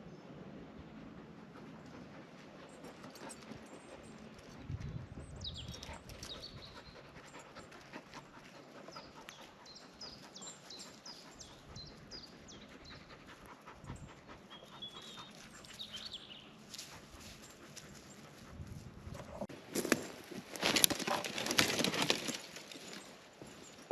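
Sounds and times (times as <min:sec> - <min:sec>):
dog panting: 0:00.9 - 0:19.5.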